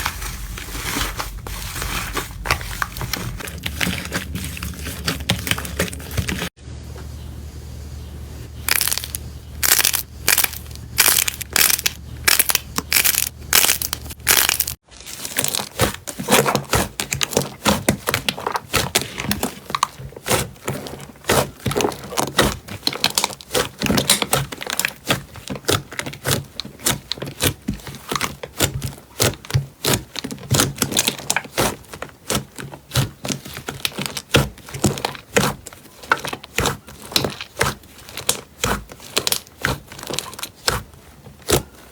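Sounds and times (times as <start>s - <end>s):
slime crackling and popping: 8.7s - 20.5s.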